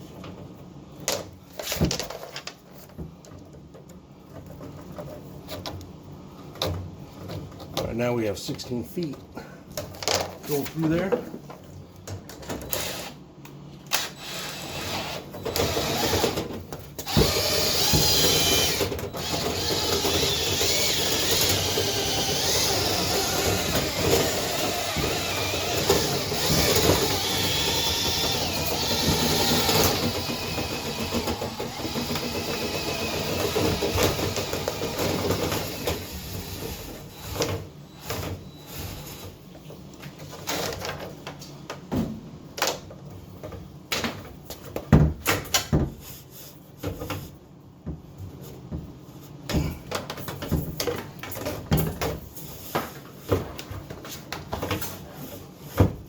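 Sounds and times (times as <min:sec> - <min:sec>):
power drill spinning brush in duct: 0:17.2 - 0:36.8.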